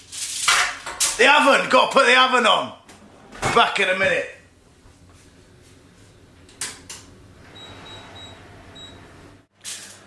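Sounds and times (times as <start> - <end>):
low steady hum: 4.2 - 9.5
oven control panel beeps: 7.5 - 9.1.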